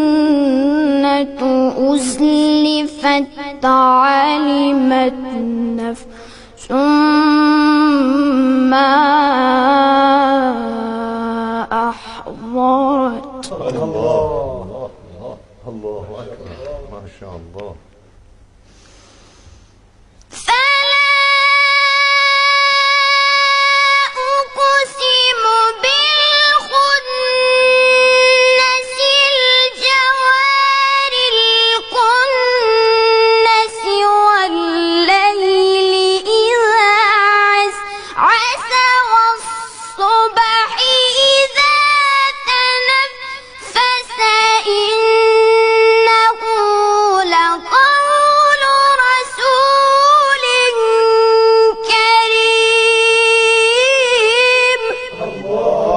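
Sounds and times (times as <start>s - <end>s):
child-like voice chanting: 20.4s - 55.9s.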